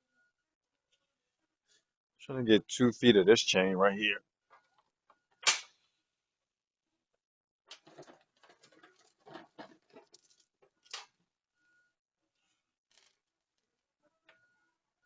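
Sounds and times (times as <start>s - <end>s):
chain links clinking and rattling: 7.8s - 10.9s.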